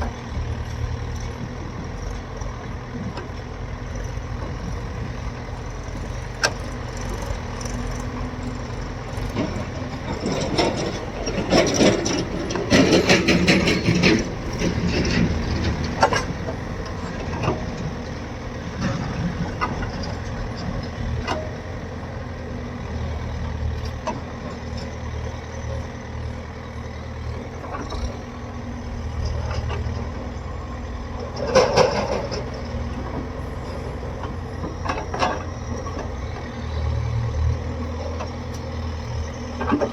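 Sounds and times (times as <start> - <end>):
diesel engine running: 0.0 - 39.9
heavy metal clanking and rattling: 6.4 - 21.7.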